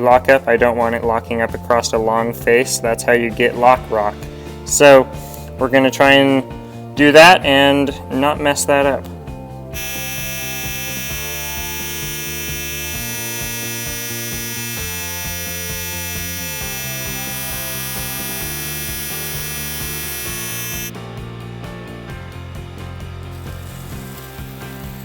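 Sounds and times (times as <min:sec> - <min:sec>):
background music: 0:00.0 - 0:25.0
grinder motor buzzing: 0:09.8 - 0:21.0.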